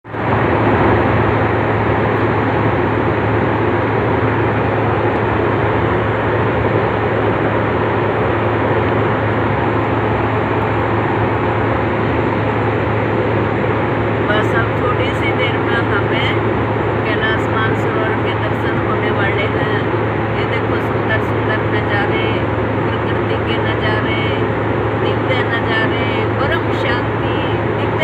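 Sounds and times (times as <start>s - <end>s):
aircraft cabin engine and air rush: 0.1s - 28.0s.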